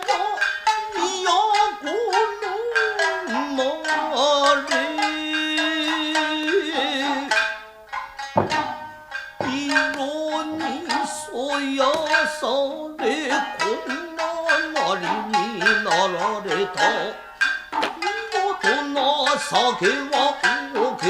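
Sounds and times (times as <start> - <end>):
plucked shamisen notes: 0.0 - 21.0
hand drum strikes: 8.2 - 11.1, 17.7 - 21.0.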